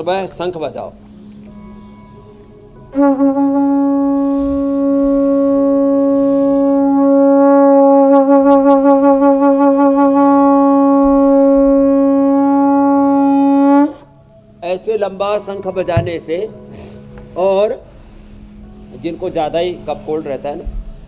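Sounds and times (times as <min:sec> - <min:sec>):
conch shell blown: 0:01.0 - 0:14.6.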